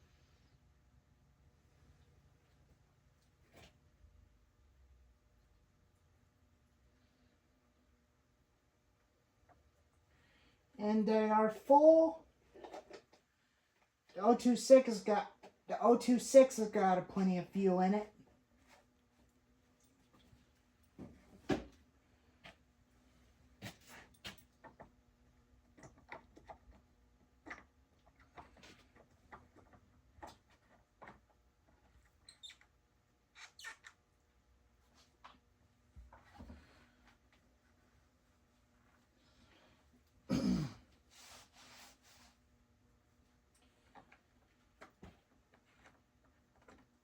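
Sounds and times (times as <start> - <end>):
person clearing throat: 40.3 - 40.9.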